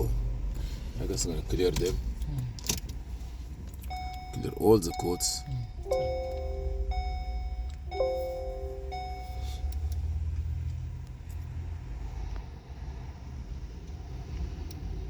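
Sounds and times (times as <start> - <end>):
car engine low hum: 0.0 - 15.0
electronic two-tone chime: 3.9 - 9.9.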